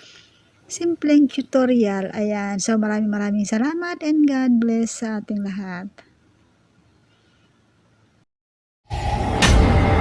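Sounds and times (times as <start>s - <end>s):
faint room hiss: 0.0s - 8.2s
loud music: 8.9s - 10.0s.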